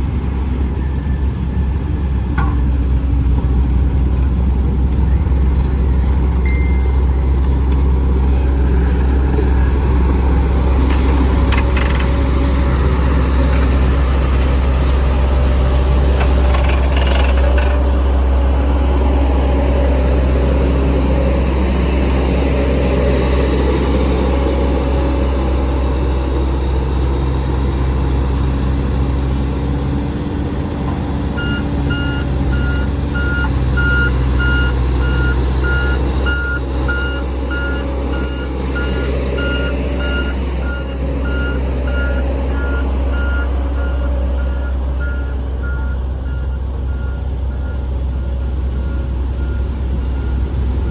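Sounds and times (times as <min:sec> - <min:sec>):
heavy diesel engine running: 0:00.0 - 0:50.9
reversing alarm beeping: 0:31.4 - 0:50.9.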